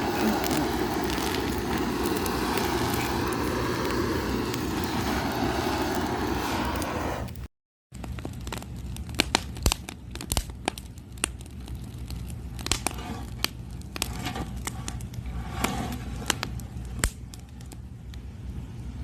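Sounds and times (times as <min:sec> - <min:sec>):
steady low hum: 0:00.0 - 0:07.5
fire crackling and popping: 0:00.0 - 0:18.4.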